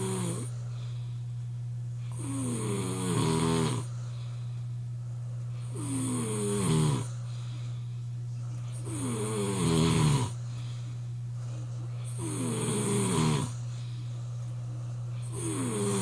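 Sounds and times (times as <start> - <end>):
person snoring: 0.0 - 0.6, 2.0 - 3.9, 5.6 - 7.2, 8.7 - 10.4, 12.0 - 13.6, 15.2 - 16.0
steady low hum: 0.0 - 16.0.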